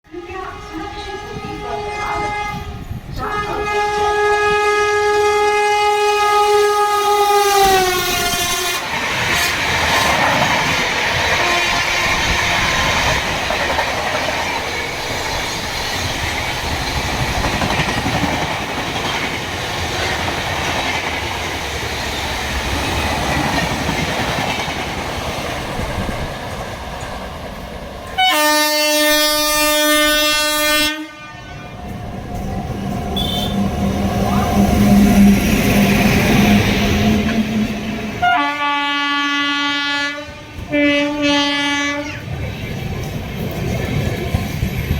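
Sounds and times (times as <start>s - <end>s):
passing train rush and wheel clatter: 0.0s - 44.9s
locomotive horn: 0.1s - 9.7s, 11.3s - 12.9s, 28.2s - 31.9s, 33.2s - 35.3s, 36.3s - 42.3s.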